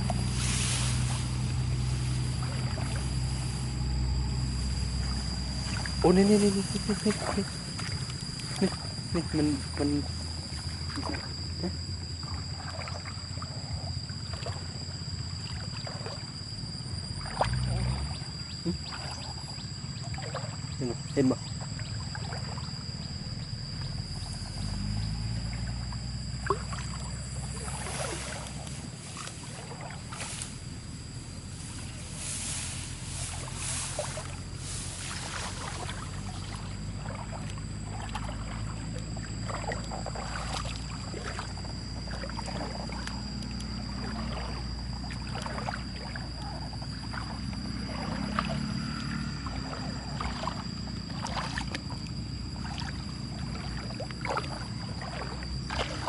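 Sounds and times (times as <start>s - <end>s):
muddy water sloshing and splashing: 0.0s - 56.0s
steady high whine: 0.0s - 56.0s.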